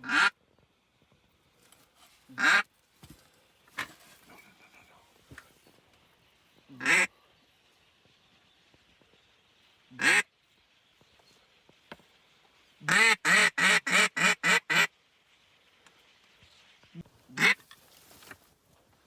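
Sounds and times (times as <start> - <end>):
duck call quacks: 0.0 - 0.3, 2.4 - 2.6, 6.8 - 7.1, 10.0 - 10.3, 12.9 - 14.9, 17.3 - 17.6.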